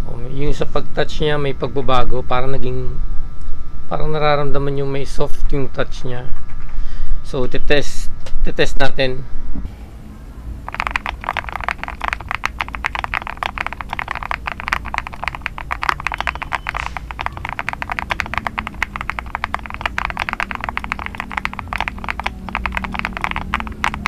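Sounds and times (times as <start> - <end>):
fast mechanical keyboard typing: 10.7 - 24.0.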